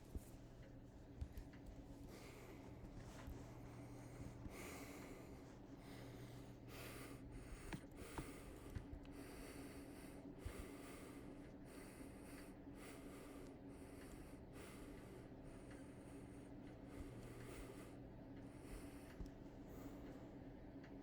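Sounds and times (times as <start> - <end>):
ceiling fan motor hum: 0.0 - 21.0.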